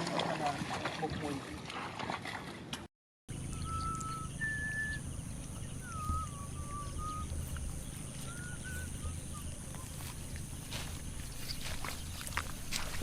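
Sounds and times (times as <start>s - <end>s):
steady low rumble: 3.3s - 13.0s
bird whistling: 3.4s - 10.1s.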